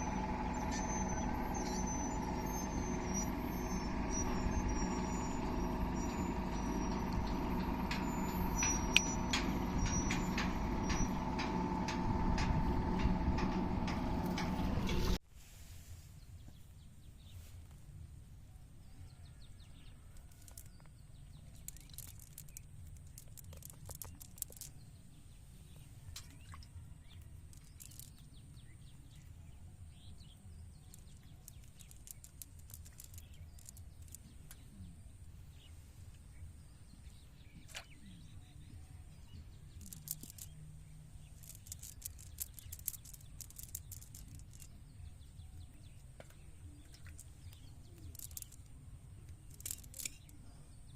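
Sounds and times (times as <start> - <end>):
birds chirping: 0.0 - 15.2, 18.8 - 50.9
quick small clicks: 41.3 - 44.8.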